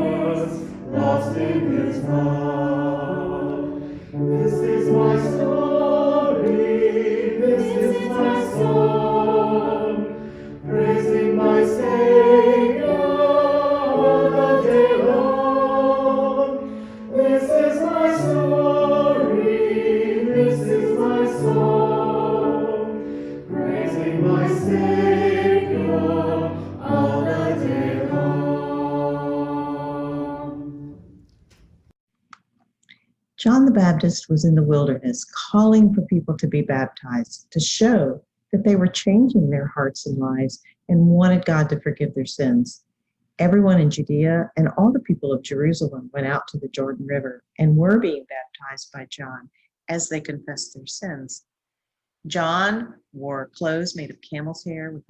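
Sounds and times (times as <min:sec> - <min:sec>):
choir singing a hymn: 0:00.0 - 0:31.0
singers breathing: 0:03.8 - 0:04.3, 0:10.1 - 0:10.7, 0:16.6 - 0:17.2, 0:23.0 - 0:23.5.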